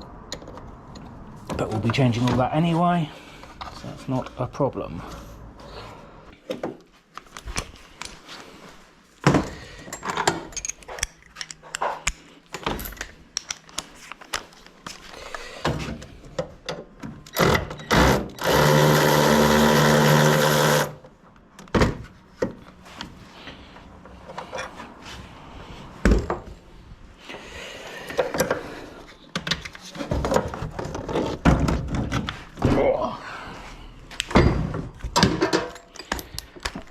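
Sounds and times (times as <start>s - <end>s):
metal parts clinking and knocking: 9.8s - 14.2s, 35.2s - 36.9s
cordless drill running: 17.4s - 21.0s.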